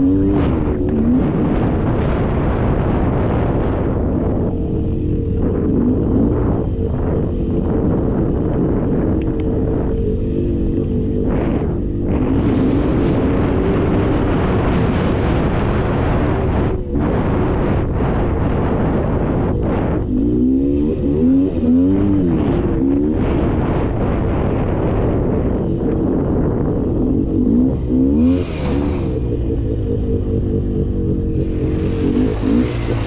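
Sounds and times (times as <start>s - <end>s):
atv engine revving: 0.0s - 33.0s
broad rushing noise: 27.7s - 33.0s.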